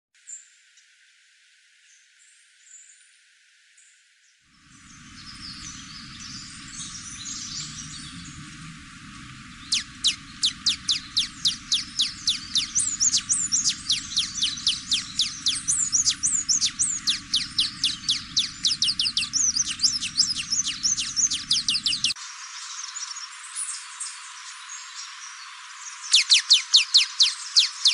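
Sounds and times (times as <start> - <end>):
high downward-sweeping bird notes: 4.6 - 22.2
hummingbird squeaky twittering: 9.6 - 22.2, 26.1 - 27.9.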